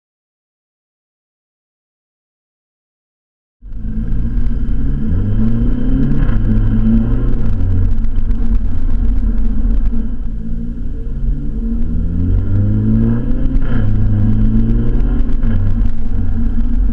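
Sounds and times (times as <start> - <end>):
car engine accelerating: 3.6 - 16.9.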